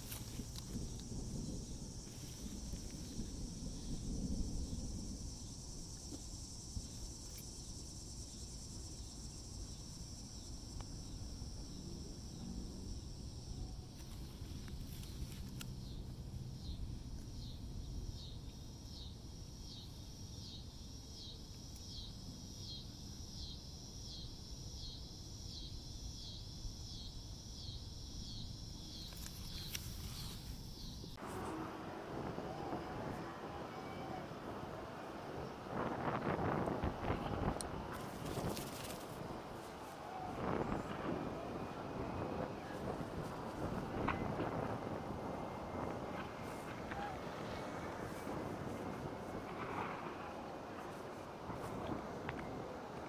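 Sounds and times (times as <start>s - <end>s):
wind rumble: 0.0s - 18.6s, 29.2s - 53.0s
insect rhythmic call: 0.0s - 53.0s
insects trilling: 0.0s - 53.0s
wind gust: 31.1s - 53.0s.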